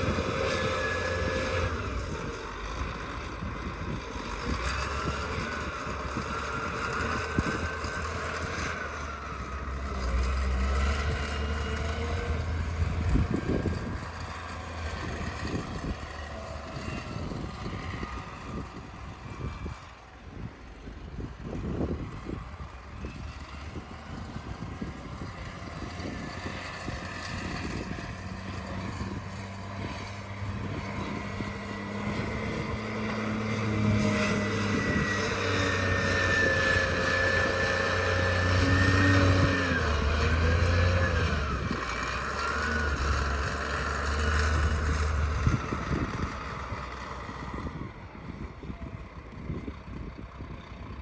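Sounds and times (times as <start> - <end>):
engine running: 0.0 - 51.0
whine shifting in pitch: 21.3 - 49.0.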